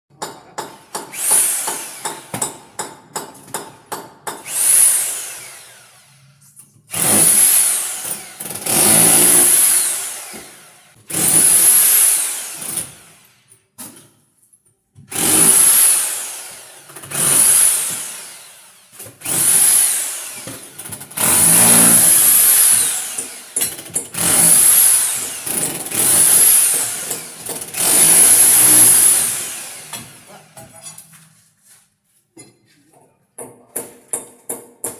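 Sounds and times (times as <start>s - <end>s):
rotary hammer drill into concrete: 0.6s - 2.6s, 4.3s - 6.3s, 6.9s - 13.6s, 15.1s - 30.4s.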